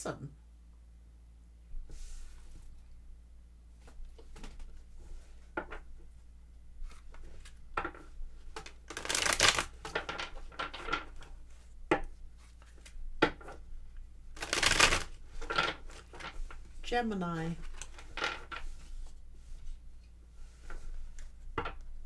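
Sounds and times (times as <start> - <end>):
cards shuffling: 8.5 - 11.0, 14.4 - 16.7.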